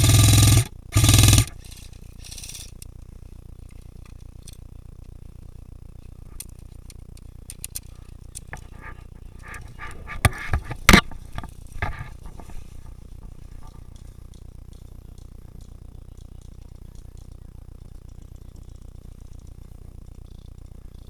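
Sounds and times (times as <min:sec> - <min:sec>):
low steady background noise: 0:00.0 - 0:21.0
sharp clicks and knocks: 0:06.4 - 0:17.4.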